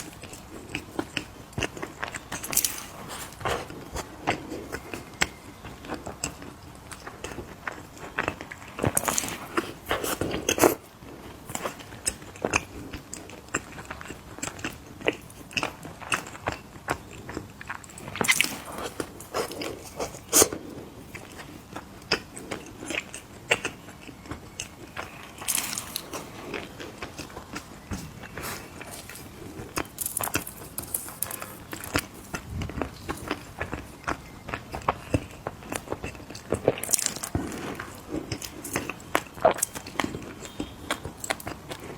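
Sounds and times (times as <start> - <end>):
chewing: 0.0 - 41.9
crunching cookies: 0.0 - 41.9.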